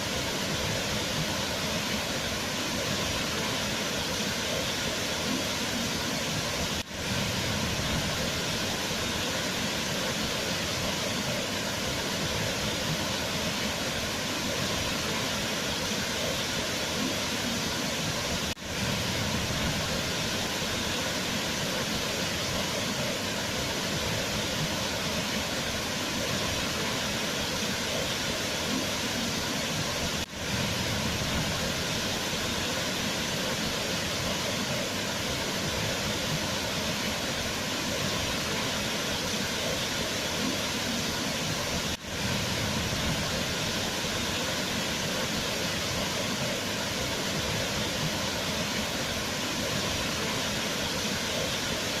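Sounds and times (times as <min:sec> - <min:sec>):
waterfall roaring: 0:00.0 - 0:52.0.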